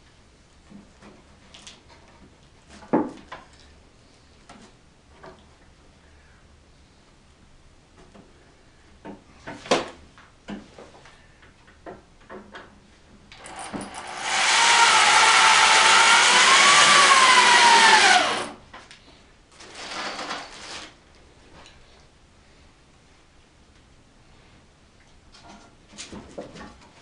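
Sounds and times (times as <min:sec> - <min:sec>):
power drill whining: 0:13.4 - 0:18.6.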